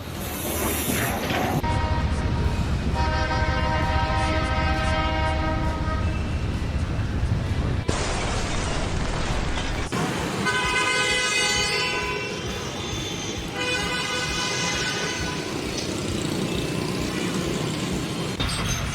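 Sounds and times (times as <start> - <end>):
steady background noise: 0.0 - 18.9
horn blasts: 1.6 - 6.8, 10.4 - 16.2.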